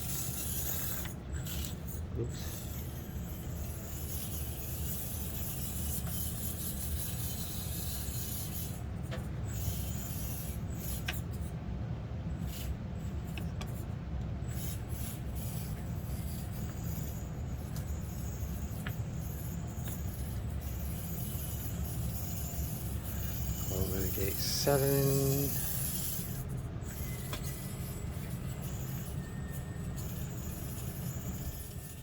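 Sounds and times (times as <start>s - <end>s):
small electric motor whirring: 0.0s - 11.4s, 12.4s - 32.0s
tyres clicking and scraping: 14.5s - 32.0s.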